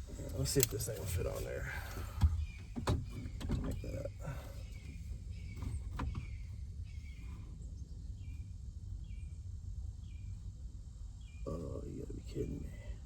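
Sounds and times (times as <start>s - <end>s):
steady low rumble: 0.0s - 13.0s
bird chirping: 2.4s - 10.5s.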